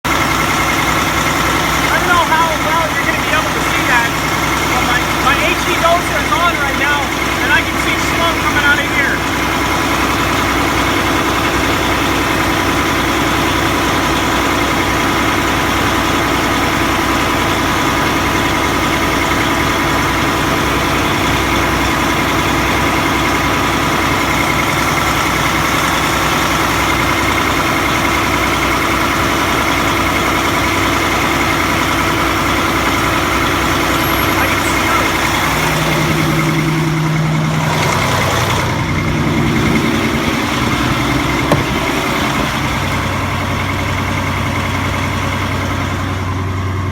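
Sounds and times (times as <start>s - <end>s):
diesel engine idling: 0.0s - 46.9s.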